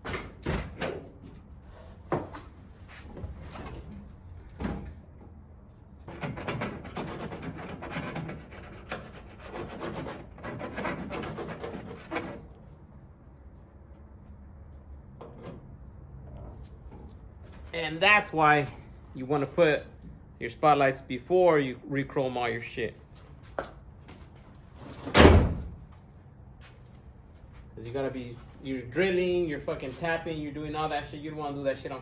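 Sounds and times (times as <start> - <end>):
file rasping on metal: 6.1 - 12.5.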